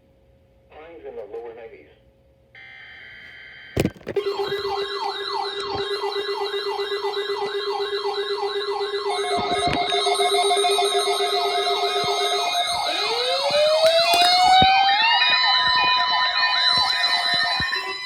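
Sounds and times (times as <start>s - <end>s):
electronic wailing siren: 4.2s - 18.0s
steady high-pitched tone: 4.2s - 18.0s.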